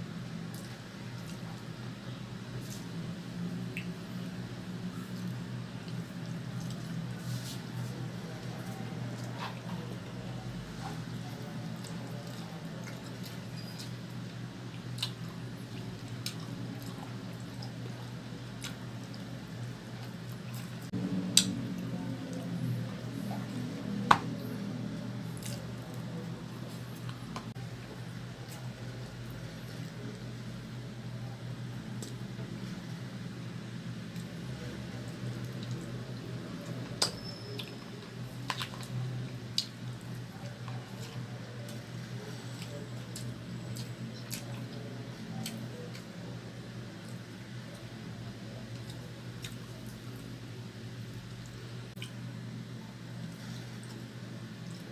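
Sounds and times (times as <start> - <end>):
close-miked eating: 0.0 - 54.9
steady low hum: 0.0 - 54.9
chewing and wet mouth sounds: 0.1 - 54.9.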